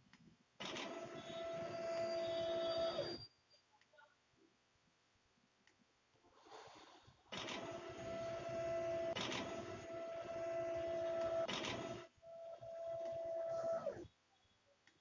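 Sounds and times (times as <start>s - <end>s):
electric motor and gears whirring: 0.6s - 3.2s, 7.3s - 14.1s.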